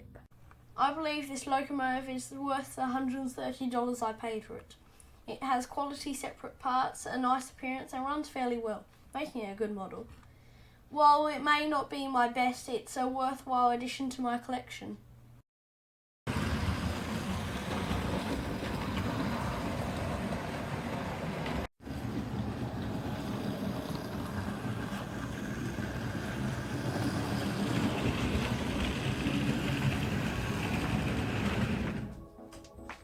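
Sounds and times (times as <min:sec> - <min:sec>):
model train rumbling on track: 0:16.3 - 0:32.2.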